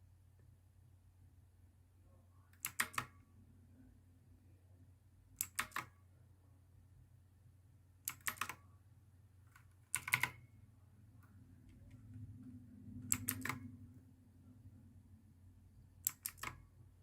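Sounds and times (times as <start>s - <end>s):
mechanical keyboard clicking: 2.6s - 3.2s, 5.4s - 5.9s, 8.0s - 8.6s, 9.5s - 10.4s, 13.0s - 13.7s, 16.0s - 16.6s.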